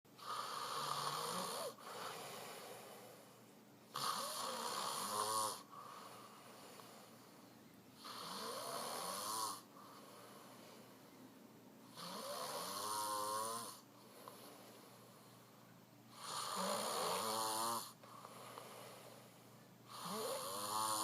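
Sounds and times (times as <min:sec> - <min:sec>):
quiet breathing: 0:00.1 - 0:21.0
man snoring: 0:00.2 - 0:03.2, 0:03.9 - 0:07.0, 0:08.0 - 0:10.8, 0:11.9 - 0:14.5, 0:16.1 - 0:19.3, 0:19.9 - 0:21.0.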